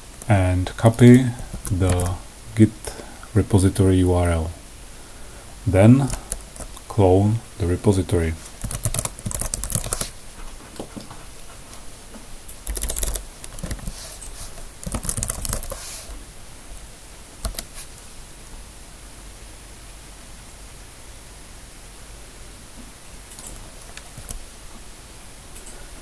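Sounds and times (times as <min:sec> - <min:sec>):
faint steady hiss: 0:00.0 - 0:26.0
computer keyboard typing: 0:01.6 - 0:02.2, 0:08.6 - 0:10.1, 0:12.6 - 0:15.8, 0:17.4 - 0:17.7, 0:23.3 - 0:24.4.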